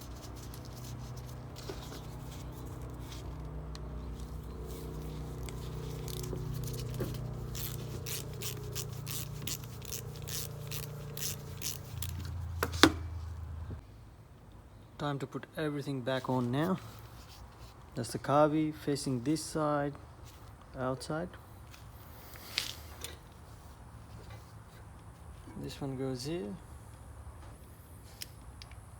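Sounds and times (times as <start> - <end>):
steady low hum: 0.0 - 15.0
hand tool clicking and scraping: 4.1 - 13.0.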